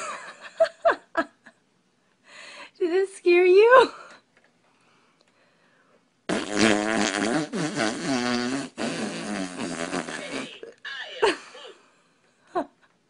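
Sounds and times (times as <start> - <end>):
fart noise: 6.3 - 10.8.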